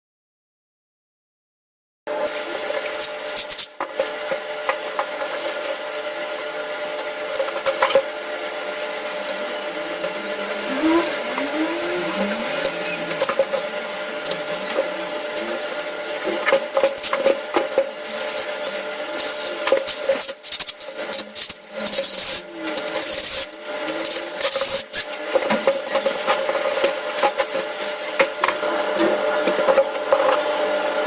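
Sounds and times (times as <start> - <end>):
power tool motor whining: 9.2 - 27.6.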